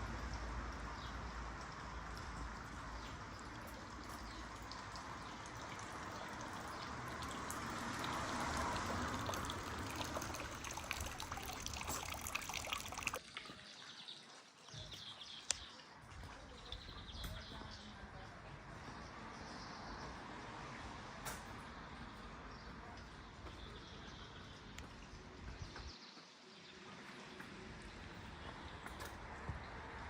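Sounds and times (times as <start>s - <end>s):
rain falling: 0.0s - 13.7s
water trickling and pouring: 0.0s - 17.9s, 26.4s - 30.0s
drops ticking: 0.7s - 13.2s.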